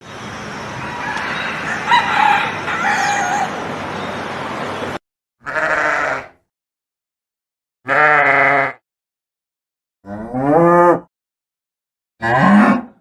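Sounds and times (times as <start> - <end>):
rooster crowing: 0.8 - 3.6.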